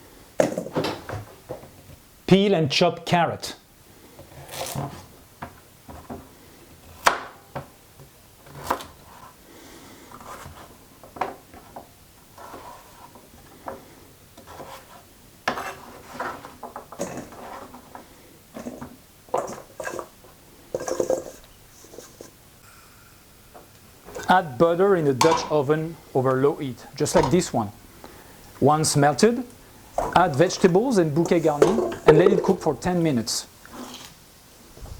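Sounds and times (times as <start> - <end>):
peeler scraping carrot: 4.4 - 5.0.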